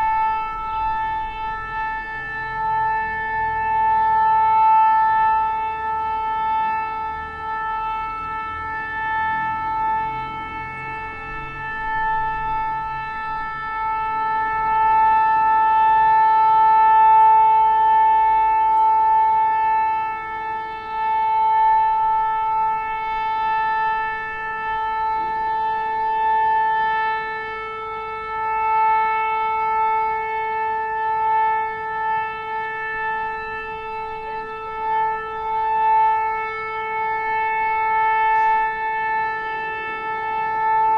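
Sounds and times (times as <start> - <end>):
steady alarm siren: 0.0 - 40.9.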